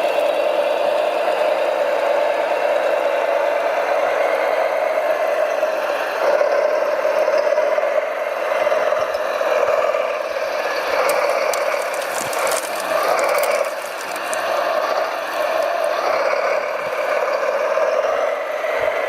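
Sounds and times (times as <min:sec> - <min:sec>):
electric drive and gearbox whir: 0:10.6 - 0:17.1
rapid clicking and rattling: 0:10.9 - 0:15.8.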